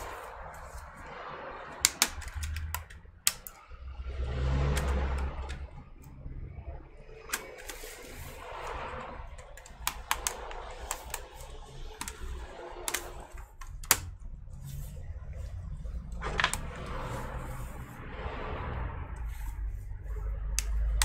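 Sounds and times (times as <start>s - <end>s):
plastic laptop parts clicking: 0.0s - 3.8s, 4.7s - 6.2s, 7.1s - 8.3s, 9.2s - 14.2s, 20.5s - 21.0s
low hum: 0.0s - 21.0s.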